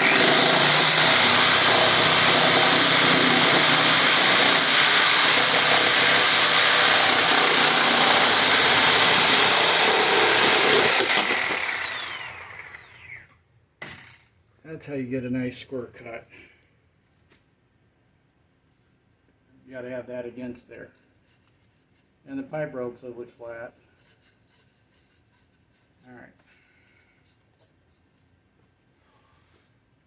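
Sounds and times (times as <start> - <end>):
electric saw cutting plastic pipe: 0.0 - 13.3.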